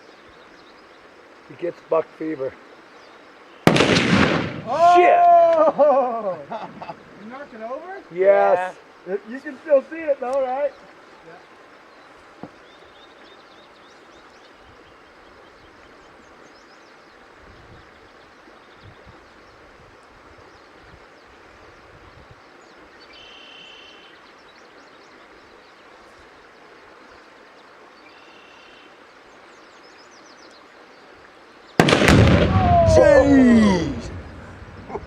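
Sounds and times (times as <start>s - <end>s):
explosive boom: 3.7s - 4.8s, 31.8s - 35.0s.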